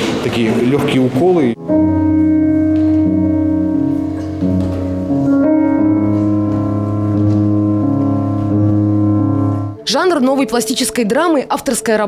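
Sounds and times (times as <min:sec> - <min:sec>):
slow keyboard chords: 0:01.1 - 0:11.3
low bass note: 0:01.6 - 0:09.8.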